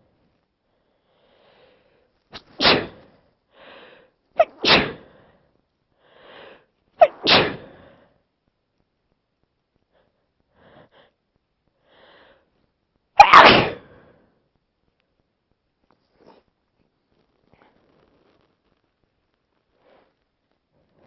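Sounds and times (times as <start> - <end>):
person sneezing: 2.3 - 3.0, 4.4 - 5.1, 7.0 - 7.8, 13.2 - 14.0.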